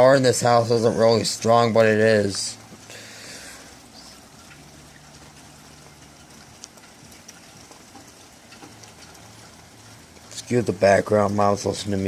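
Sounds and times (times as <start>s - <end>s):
steady rain falling: 0.0s - 12.0s
close drops ticking: 1.4s - 12.0s.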